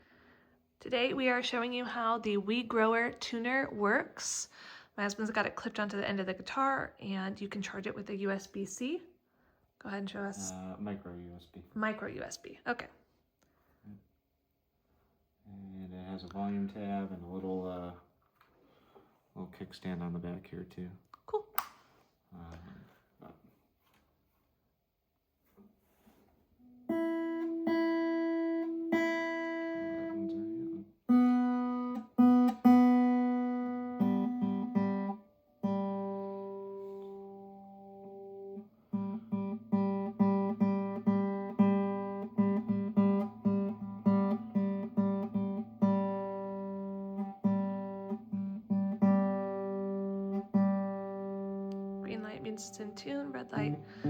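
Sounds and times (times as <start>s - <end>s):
guitar strings plucked: 26.9s - 54.0s.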